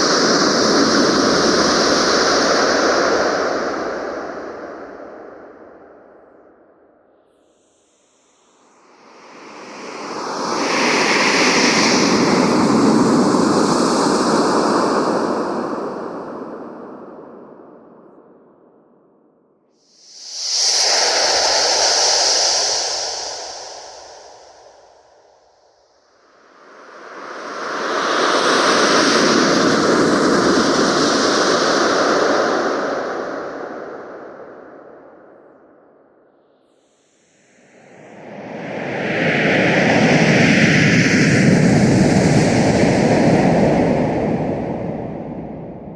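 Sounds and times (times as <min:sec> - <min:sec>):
wind gust blowing hard: 0:08.9 - 0:17.3, 0:26.5 - 0:35.2, 0:37.7 - 0:45.9
wind whistling: 0:26.5 - 0:35.2
gust of wind: 0:37.7 - 0:45.9.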